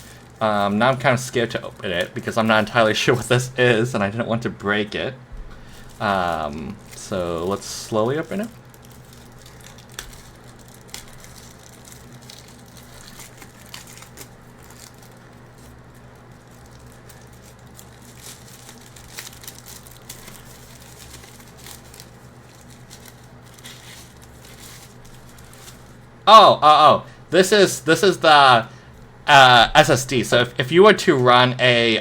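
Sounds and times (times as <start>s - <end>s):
packaging crinkling and rustling: 0.0s - 3.5s, 5.4s - 26.3s
steady low hum: 0.0s - 32.0s.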